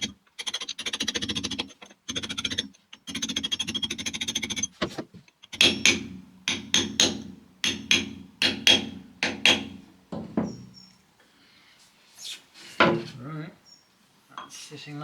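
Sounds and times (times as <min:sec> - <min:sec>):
hammer strikes on metal: 0:05.6 - 0:10.8.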